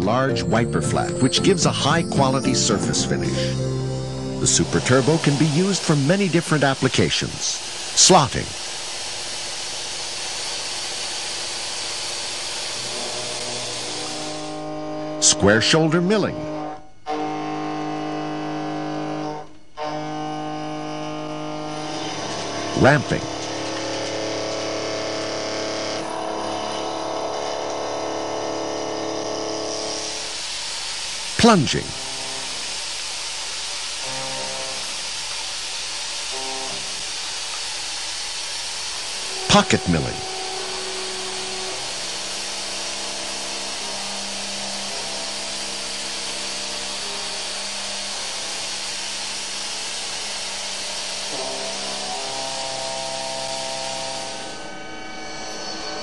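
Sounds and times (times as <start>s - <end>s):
held machine tones: 0.0s - 7.3s
milling cutter machining metal: 4.4s - 18.8s, 19.8s - 56.0s.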